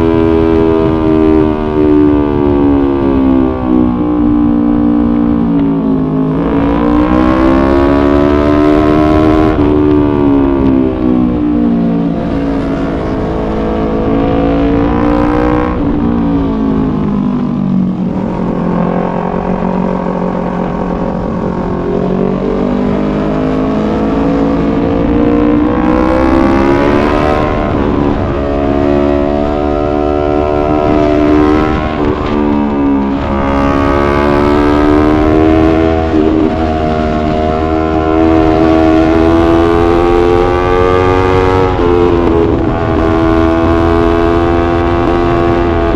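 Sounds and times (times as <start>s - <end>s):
motorcycle engine: 0.0s - 45.9s.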